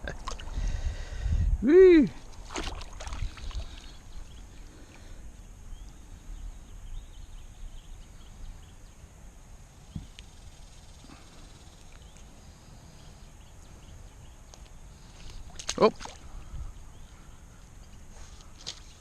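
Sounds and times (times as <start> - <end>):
water splashing: 0.0 - 0.6, 2.2 - 4.4, 15.4 - 16.3
faint river water: 0.0 - 19.0.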